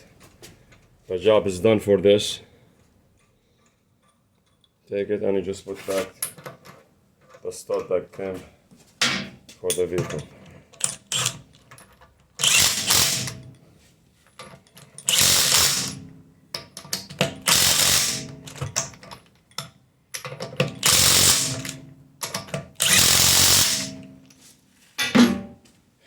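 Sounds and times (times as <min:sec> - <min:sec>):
power tool driving bolts: 0:10.8 - 0:11.5, 0:12.4 - 0:13.5, 0:15.0 - 0:16.1, 0:17.0 - 0:19.0, 0:20.6 - 0:24.1.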